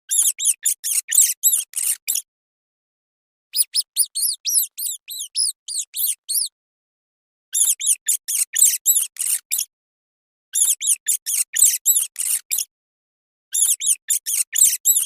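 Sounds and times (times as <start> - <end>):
rat squeaking: 0.1 - 2.3, 3.5 - 6.6, 7.5 - 9.7, 10.6 - 12.7, 13.5 - 15.0.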